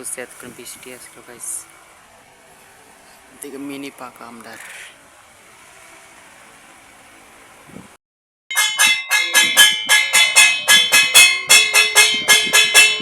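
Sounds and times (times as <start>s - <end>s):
bell-like struck notes: 8.5s - 13.0s.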